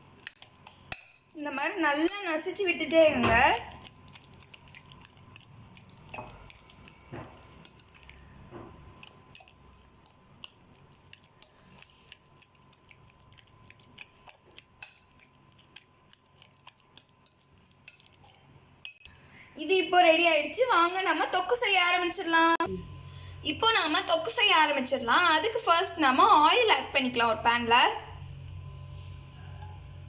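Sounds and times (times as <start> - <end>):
spoon scraping a bowl: 3.6 - 19.2.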